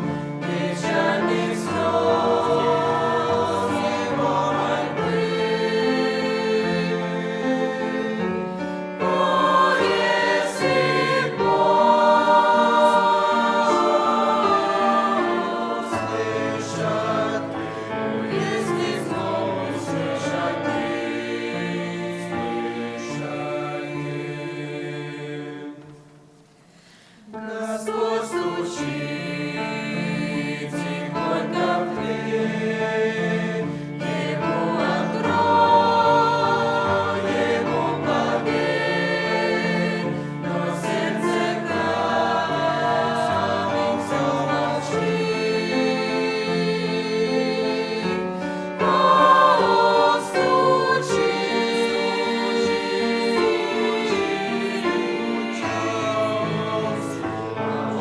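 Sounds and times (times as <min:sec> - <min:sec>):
church choir singing a hymn: 0:00.0 - 0:26.2, 0:26.8 - 0:58.0.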